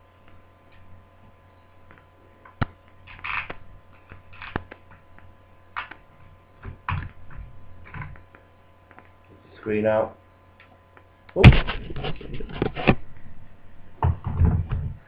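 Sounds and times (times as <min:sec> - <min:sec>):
laptop parts clicking and scraping: 0:03.0 - 0:04.8, 0:11.6 - 0:13.0.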